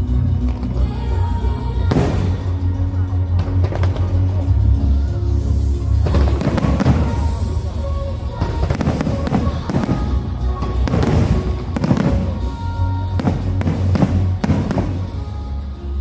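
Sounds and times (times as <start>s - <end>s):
music playing: 0.0s - 16.0s
fireworks bangs and crackles: 6.0s - 7.7s, 8.4s - 15.3s.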